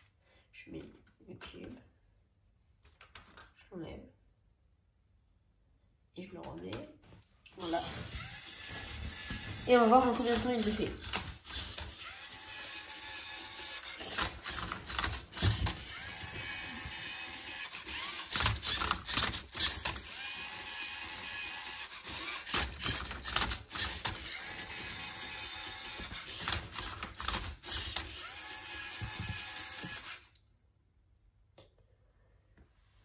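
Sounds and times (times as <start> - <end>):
motors whirring: 7.6 - 30.3
robot arm clattering cube: 8.1 - 30.2.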